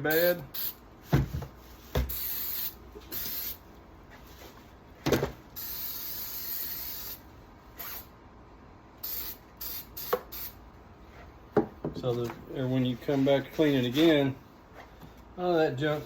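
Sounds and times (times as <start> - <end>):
aerosol can spraying: 0.1 - 0.8, 2.0 - 3.6, 5.6 - 7.2, 9.0 - 10.6.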